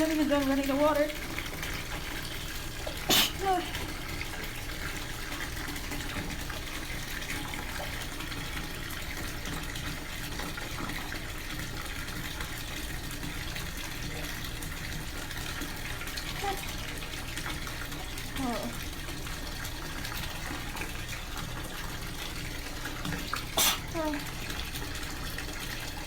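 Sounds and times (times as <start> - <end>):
tap water gushing into bathtub: 0.0 - 26.0.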